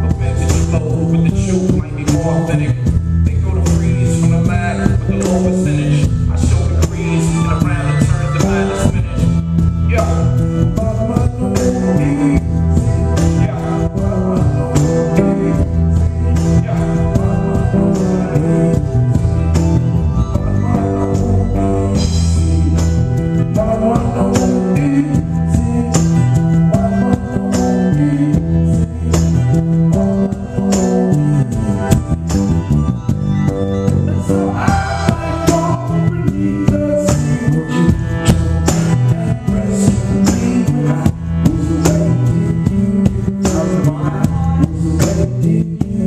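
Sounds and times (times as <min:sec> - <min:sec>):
person singing: 0:00.0 - 0:32.0, 0:33.9 - 0:46.0
bass: 0:00.0 - 0:46.0
live band playing: 0:00.0 - 0:46.0
drum beat: 0:33.9 - 0:46.0.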